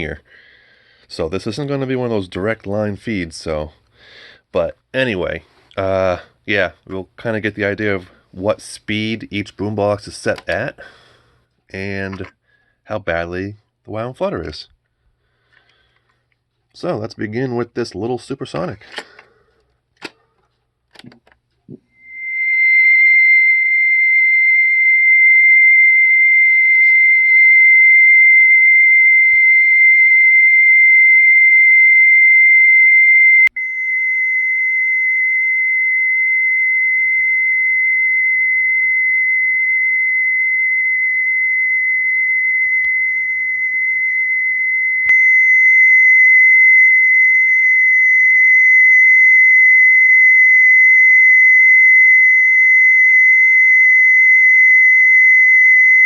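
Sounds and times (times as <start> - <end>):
high-pitched test tone: 21.9 - 56.0.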